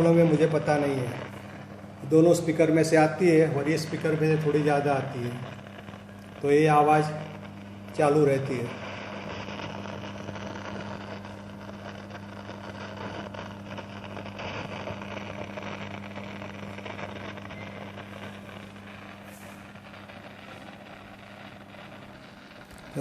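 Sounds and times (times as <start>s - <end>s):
speaker hiss: 0.0s - 23.0s
speaker hum: 0.0s - 23.0s.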